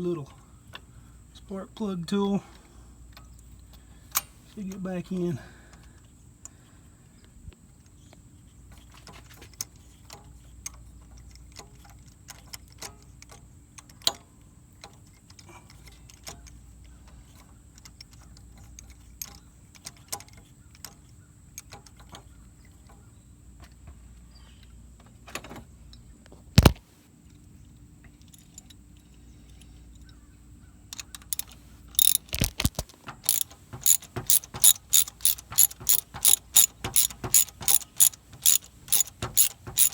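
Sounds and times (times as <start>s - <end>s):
socket ratchet clicking: 26.6s - 26.8s, 31.0s - 39.9s
tools clicking and tapping: 26.6s - 26.8s, 30.9s - 39.9s.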